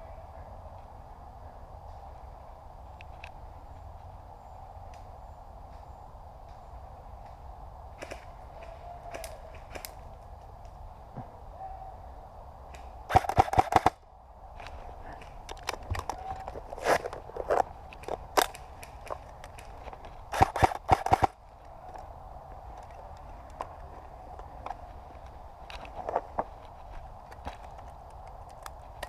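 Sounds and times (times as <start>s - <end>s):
airsoft rifle rapid bursts: 13.1s - 14.0s, 20.3s - 21.4s.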